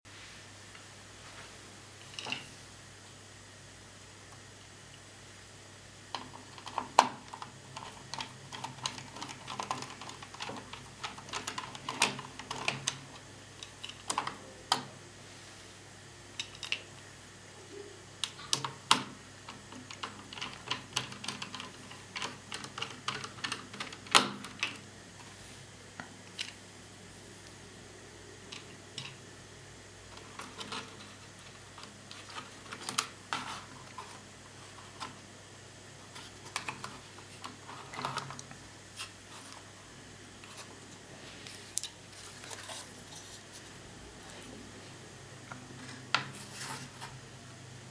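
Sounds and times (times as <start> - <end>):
laptop parts clicking and clattering: 6.1 - 15.0, 16.3 - 17.0, 18.2 - 24.9, 28.5 - 29.2, 30.1 - 35.3, 36.0 - 39.6.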